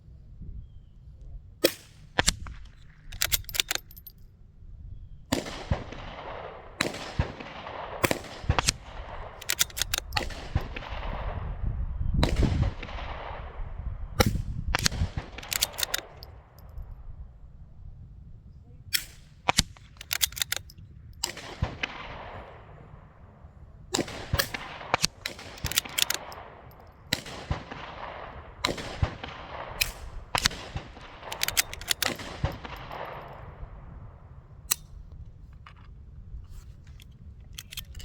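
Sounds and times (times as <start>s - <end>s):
wind rumbling on microphone: 0.0s - 38.0s
rifle shots with echo: 5.3s - 11.6s, 12.2s - 16.9s, 19.0s - 35.0s.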